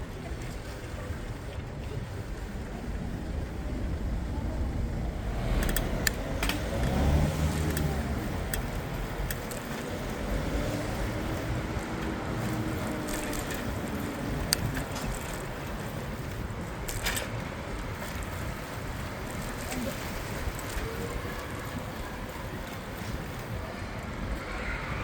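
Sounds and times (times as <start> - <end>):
low rumble of tyres and traffic: 0.0 - 25.0
vehicle going by faintly: 2.5 - 8.9
car passing close: 3.7 - 20.8
light clicks: 5.5 - 10.2.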